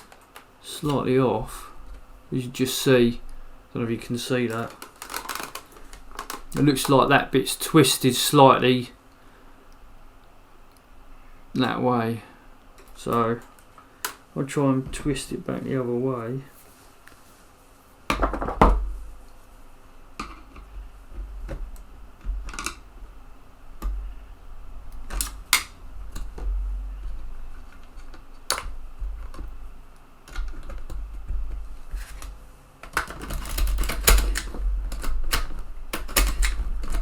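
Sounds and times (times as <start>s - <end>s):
floppy drive eject clicks: 32.9s - 37.0s.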